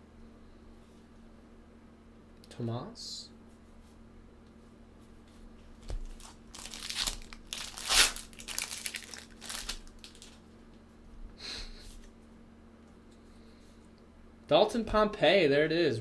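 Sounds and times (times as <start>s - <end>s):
wrapper tearing and crinkling: 5.8s - 10.4s.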